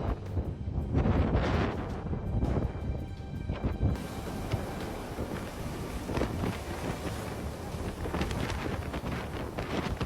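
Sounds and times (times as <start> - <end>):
storm wind buffeting microphone: 0.0 - 10.0.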